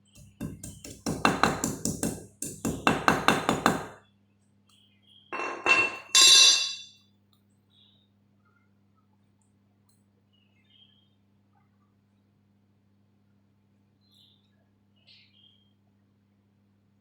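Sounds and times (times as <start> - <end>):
light hammer taps on metal: 0.2 - 2.9
ringing metallic scrape: 5.4 - 6.9.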